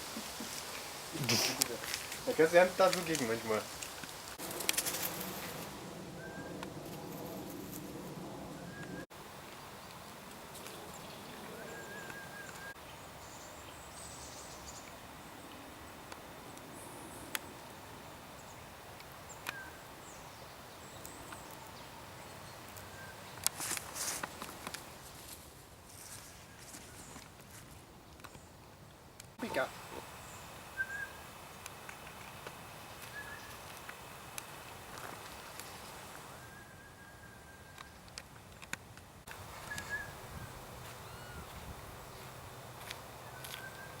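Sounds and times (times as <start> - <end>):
rustling: 0.0 - 5.9, 22.6 - 28.4, 29.4 - 36.4.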